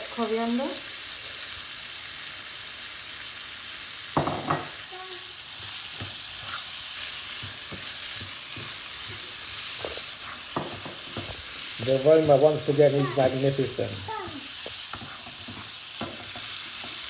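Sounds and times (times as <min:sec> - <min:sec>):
food sizzling in oil: 0:00.0 - 0:17.0
spoon knocking against pan: 0:04.2 - 0:04.8, 0:10.5 - 0:11.4, 0:14.6 - 0:17.0.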